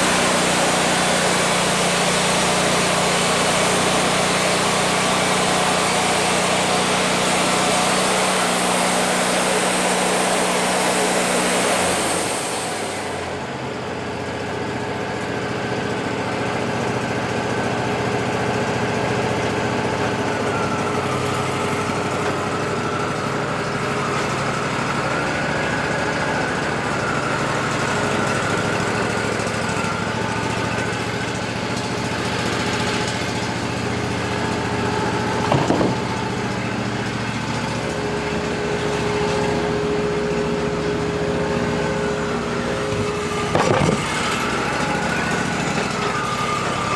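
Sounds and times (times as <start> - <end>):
sawmill engine running: 0.0 - 46.9
band saw blade cutting wood: 32.4 - 36.5.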